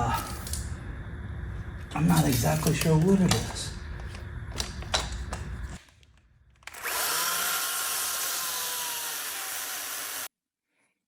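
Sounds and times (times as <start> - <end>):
handling knocks and clicks: 2.3 - 6.8
electric machine motor whine: 6.7 - 10.3.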